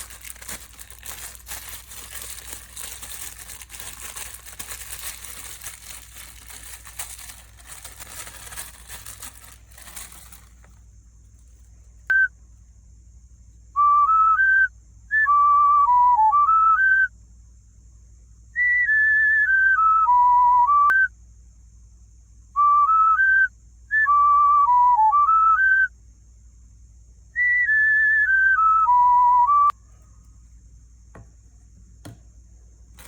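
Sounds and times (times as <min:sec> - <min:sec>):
whistle-like tune: 0:27.4 - 0:29.7.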